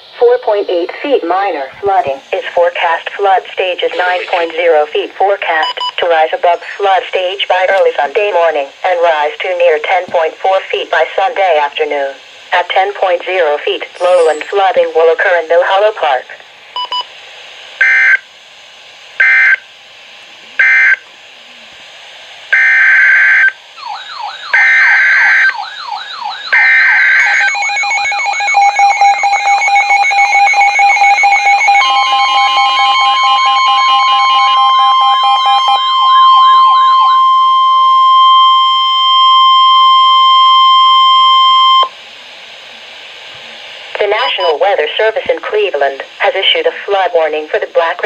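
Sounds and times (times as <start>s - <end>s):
steady warning alarm tone: 0.0s - 8.8s, 12.6s - 16.2s, 17.8s - 18.2s, 19.2s - 19.6s, 20.6s - 21.1s, 22.5s - 42.0s
digital data bursts: 2.3s - 4.9s, 13.9s - 14.8s, 23.8s - 41.0s
warbling siren-like alarm tones: 22.6s - 41.9s.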